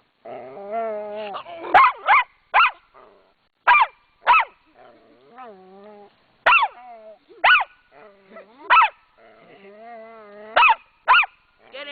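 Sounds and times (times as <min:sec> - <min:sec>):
small dog growling and snarling: 0:00.2 - 0:01.8, 0:04.7 - 0:10.7
sharp high dog barks: 0:01.6 - 0:02.8, 0:03.6 - 0:04.6, 0:06.4 - 0:06.8, 0:07.4 - 0:07.8, 0:08.7 - 0:09.0, 0:10.6 - 0:11.4.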